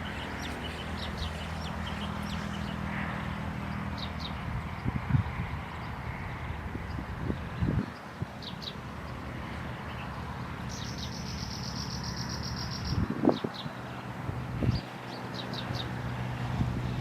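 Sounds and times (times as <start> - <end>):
songbird chirping and trilling: 0.0 - 2.9, 6.8 - 13.8.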